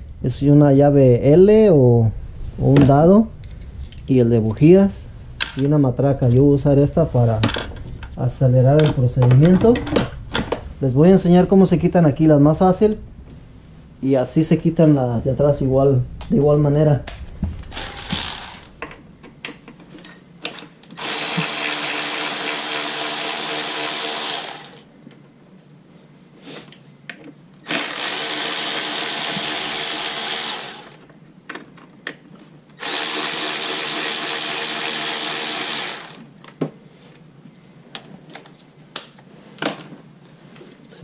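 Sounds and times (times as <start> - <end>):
cordless power tool running: 17.7 - 18.8, 21.0 - 24.8, 27.7 - 31.0, 32.8 - 36.3.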